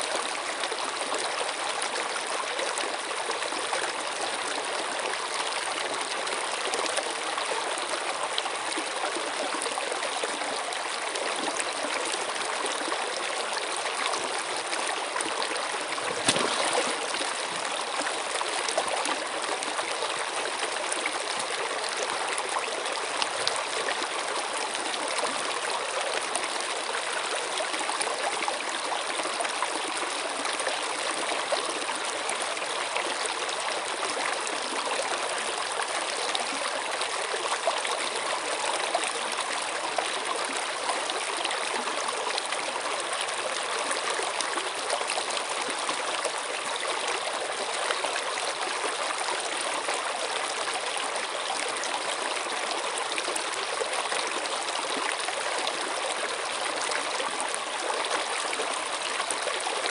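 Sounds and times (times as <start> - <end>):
stream rushing and trickling: 0.0 - 59.9
water splash: 16.0 - 17.6.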